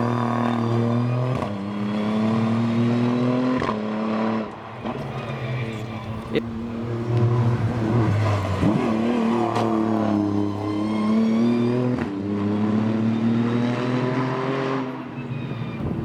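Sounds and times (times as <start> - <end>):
race car engine accelerating: 0.0 - 16.0.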